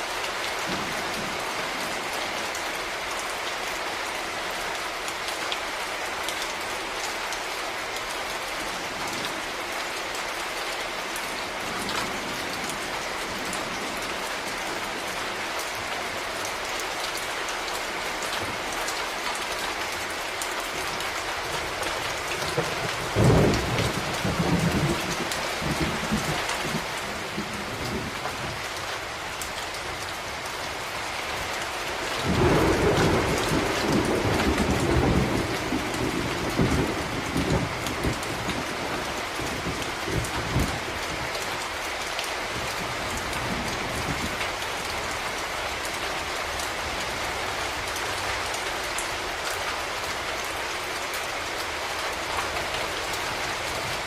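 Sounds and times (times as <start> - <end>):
steady rain: 0.0 - 54.0
thunder rolling: 32.2 - 40.9.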